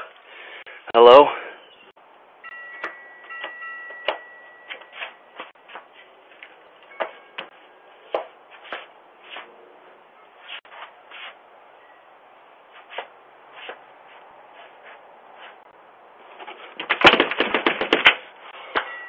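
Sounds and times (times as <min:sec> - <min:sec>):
faint steady tone: 0:11.5 - 0:12.7.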